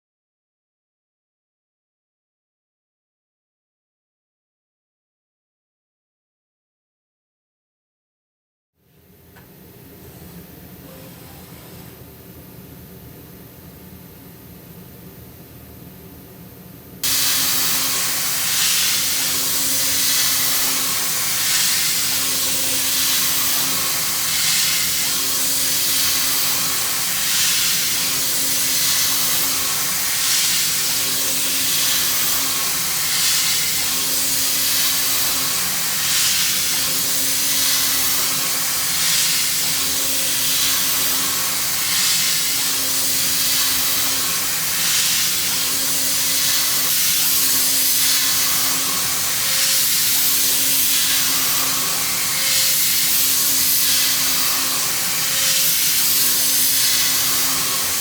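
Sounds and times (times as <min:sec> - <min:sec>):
milling machine cutting hiss: 0:17.0 - 0:58.0.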